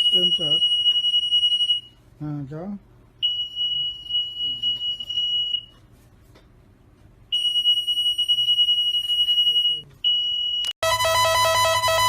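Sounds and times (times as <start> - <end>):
high-pitched electronic alarm tone: 0.0 - 2.0, 7.4 - 12.0.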